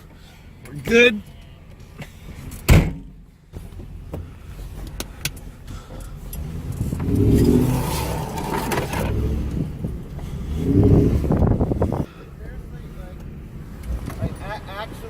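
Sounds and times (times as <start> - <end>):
car engine revving: 3.6 - 15.0.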